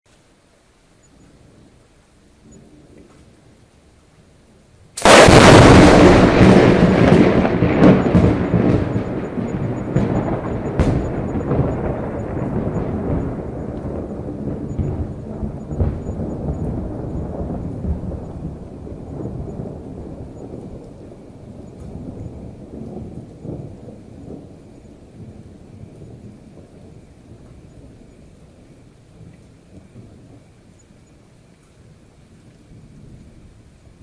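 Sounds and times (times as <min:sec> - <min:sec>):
thunder rumble: 0:00.2 - 0:34.0
thunder crack: 0:05.0 - 0:31.2.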